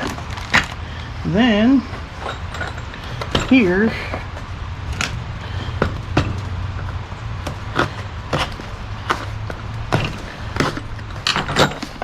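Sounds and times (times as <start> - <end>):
steady low hum: 0.0 - 12.0
clicks and knocks of handling: 9.9 - 12.0.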